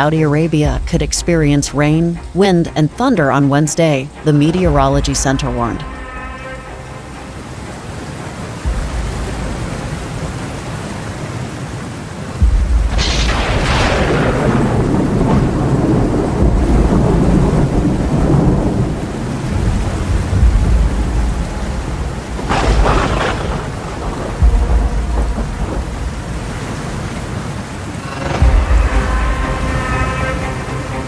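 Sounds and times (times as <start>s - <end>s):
heavy rain: 0.0s - 31.0s
rolling thunder: 12.4s - 31.0s
sharp thunderclaps: 12.4s - 31.0s.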